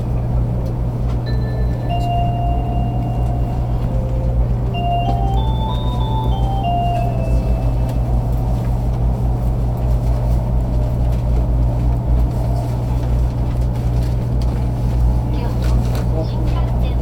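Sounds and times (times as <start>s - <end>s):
train interior rumble and hum: 0.0s - 17.0s
onboard chime melody: 1.3s - 8.7s.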